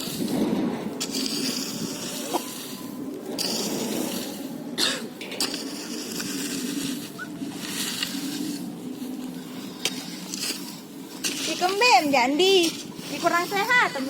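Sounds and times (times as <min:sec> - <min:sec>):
person coughing: 0:04.8 - 0:05.1.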